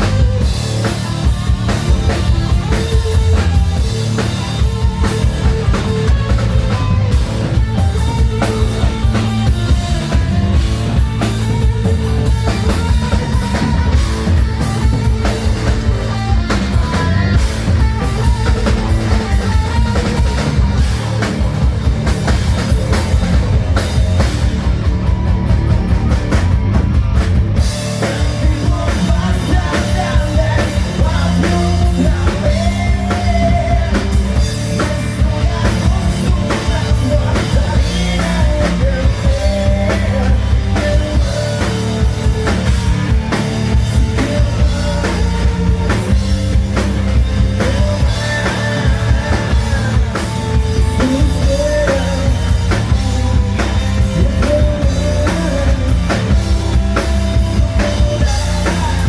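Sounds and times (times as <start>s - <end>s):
hard rock band playing live: 0.0s - 59.0s.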